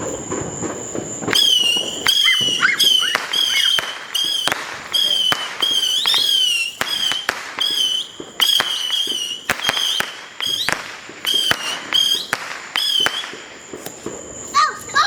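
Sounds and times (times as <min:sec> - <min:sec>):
whistling firework shots: 0:00.0 - 0:15.0.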